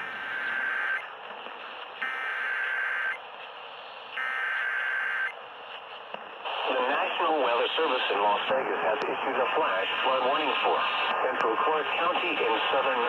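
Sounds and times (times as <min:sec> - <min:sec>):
buzzing digital data tones: 0:00.0 - 0:01.0, 0:02.0 - 0:03.2
radio hiss: 0:00.0 - 0:13.0.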